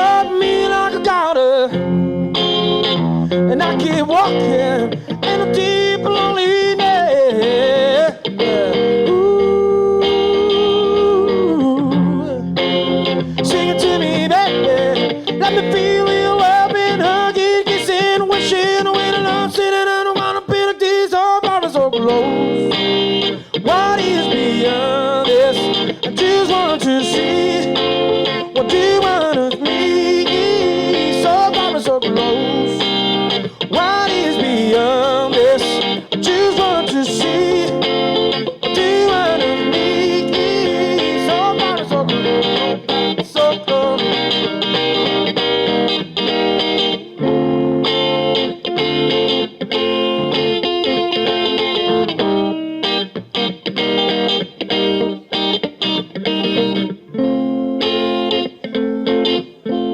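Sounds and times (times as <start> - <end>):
man singing: 0.0 - 1.9, 3.3 - 45.4
guitar accompaniment: 0.0 - 59.9.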